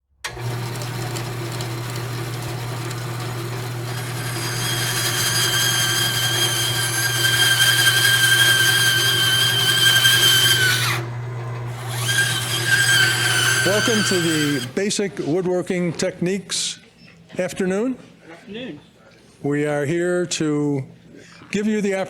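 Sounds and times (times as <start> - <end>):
power tool low hum: 0.2 - 14.8.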